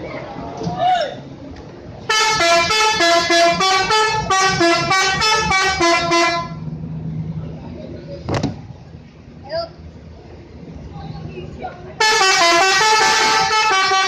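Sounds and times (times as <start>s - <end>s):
bus musical horn tune: 2.1s - 6.7s, 12.0s - 14.0s.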